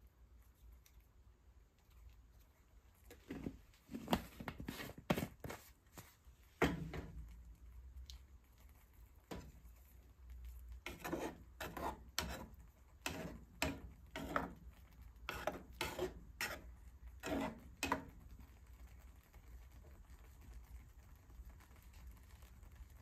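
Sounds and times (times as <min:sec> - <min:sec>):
utensil scraping noodles in a pan: 0:08.2 - 0:18.6.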